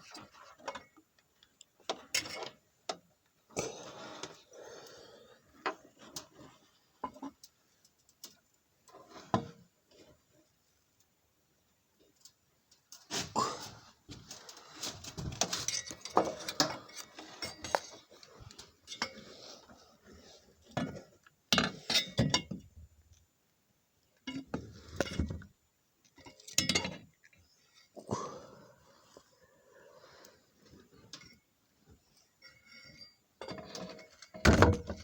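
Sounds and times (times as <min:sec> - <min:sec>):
metal objects clinking: 0:15.4 - 0:18.0.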